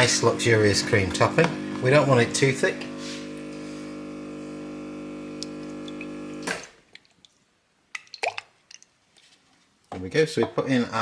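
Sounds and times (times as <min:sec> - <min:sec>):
espresso machine pump humming: 0:00.0 - 0:06.6.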